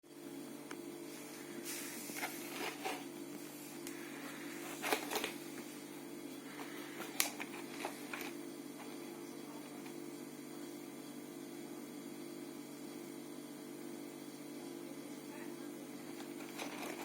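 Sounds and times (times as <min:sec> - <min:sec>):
steady low hum: 0:00.0 - 0:17.0
packaging rustling: 0:04.5 - 0:05.7, 0:06.5 - 0:08.4, 0:16.2 - 0:17.0.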